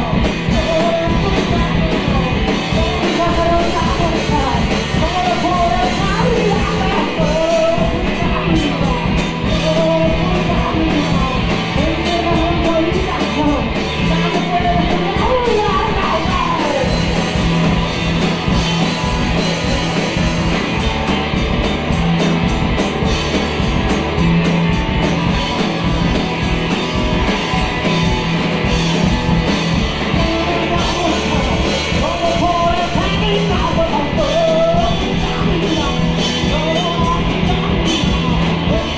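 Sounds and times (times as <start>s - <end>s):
loud rock music with singing: 0.0s - 38.9s.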